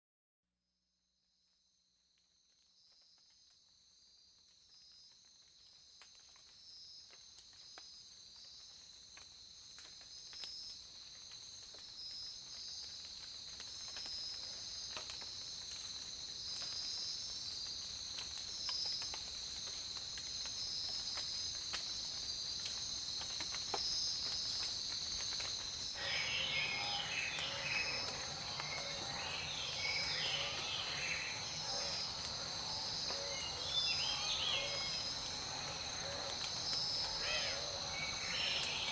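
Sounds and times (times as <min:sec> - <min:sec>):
pulsing insect chorus: 0:26.0 - 0:38.9
songbirds chirping: 0:26.0 - 0:38.9.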